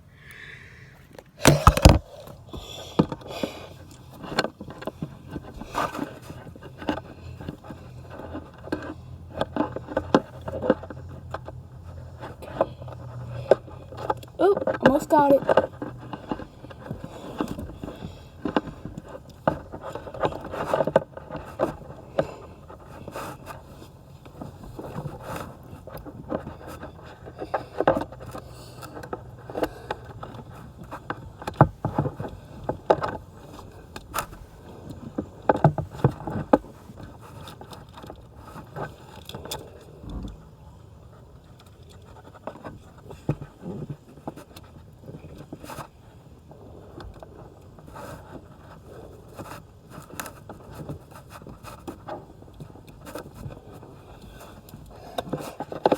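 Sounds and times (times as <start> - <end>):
strap scraping on upholstery: 1.0 - 40.4, 41.1 - 55.9
connector knocks and clicks: 1.1 - 2.3.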